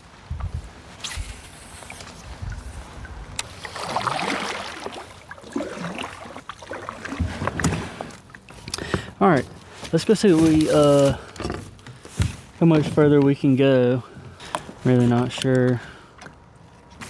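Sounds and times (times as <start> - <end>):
water splashing: 1.1 - 11.3
knocks and clicks from kayak: 3.4 - 13.4, 14.1 - 17.0.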